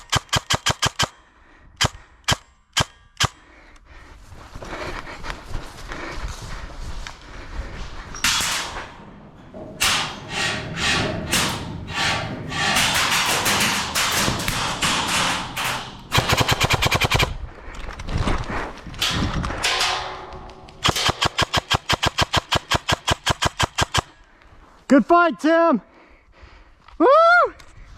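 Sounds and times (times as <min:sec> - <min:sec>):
airsoft guns firing bursts: 0:00.0 - 0:01.1, 0:13.0 - 0:17.4, 0:20.8 - 0:24.1.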